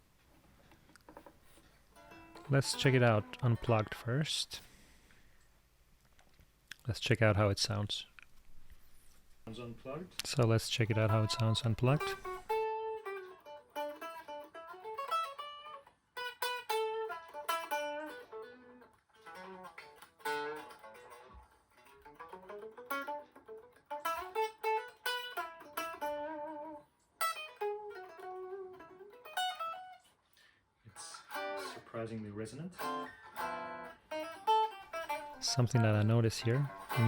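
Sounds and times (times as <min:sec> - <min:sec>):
electric guitar picked notes and chords: 0:10.9 - 0:30.0, 0:31.2 - 0:31.8, 0:32.8 - 0:37.0.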